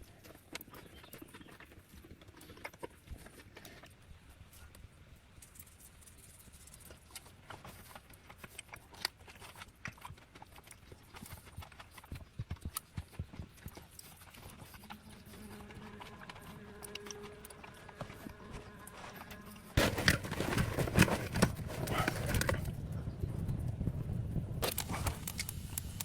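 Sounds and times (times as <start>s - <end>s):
faint steady hum: 11.9s - 26.0s
dull thumps: 19.8s - 22.6s.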